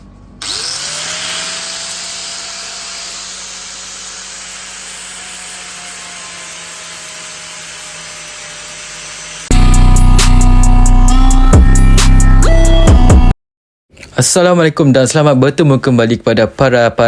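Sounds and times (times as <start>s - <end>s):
angle grinder running: 0.4s - 9.5s.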